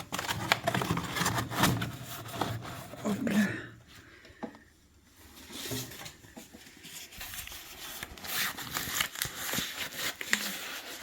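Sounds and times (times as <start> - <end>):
cardboard tearing and crumpling: 0.0 - 3.0, 7.3 - 11.0.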